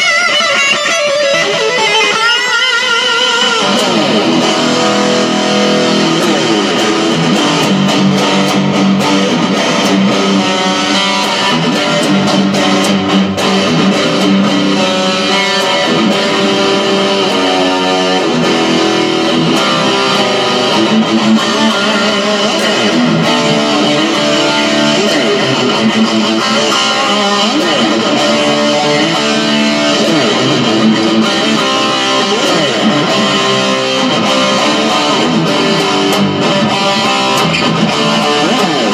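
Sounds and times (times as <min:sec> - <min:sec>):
distorted electric guitar riffs: 0:00.0 - 0:38.9.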